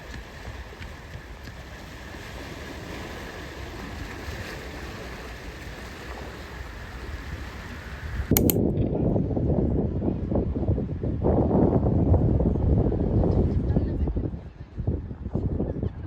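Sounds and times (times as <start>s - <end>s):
sea surf: 0.0s - 8.1s
wind rumbling on microphone: 6.7s - 16.0s.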